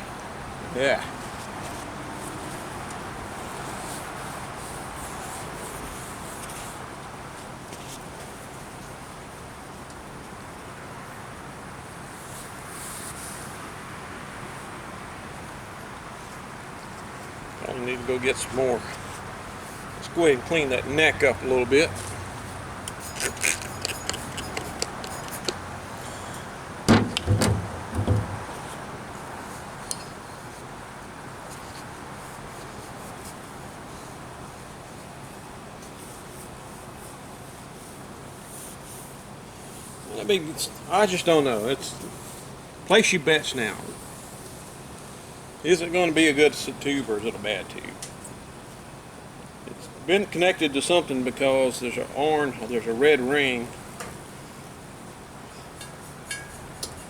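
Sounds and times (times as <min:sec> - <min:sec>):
faint rubbing sounds: 0:12.1 - 0:13.6
light clicks and rubbing on glass: 0:22.0 - 0:28.8
heavy thumps and scuffs: 0:26.9 - 0:28.8.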